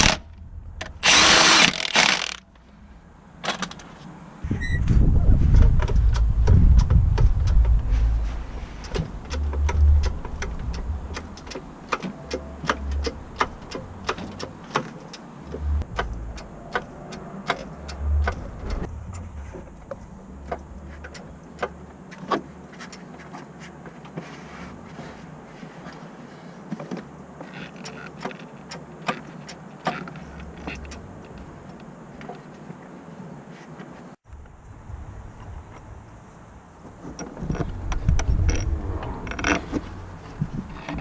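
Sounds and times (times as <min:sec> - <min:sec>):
low rumble: 0:00.0 - 0:01.6, 0:04.4 - 0:11.4, 0:15.6 - 0:21.0, 0:37.4 - 0:40.8.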